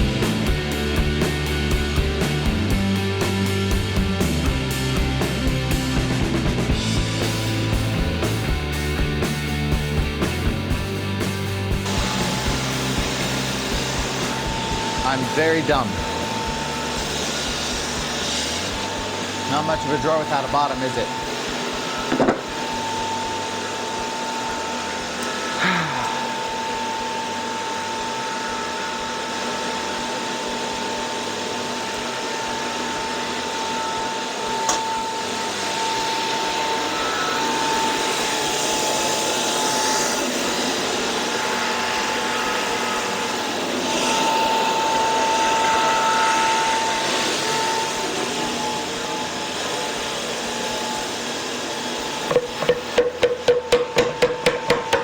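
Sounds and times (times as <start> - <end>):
small electric motor whining: 11.8 - 53.0.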